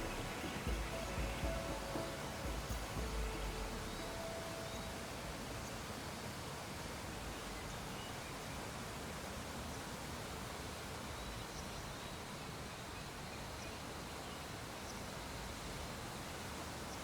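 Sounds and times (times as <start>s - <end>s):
faint high-pitched blips: 0.0s - 5.9s
room tone hiss: 0.0s - 17.0s.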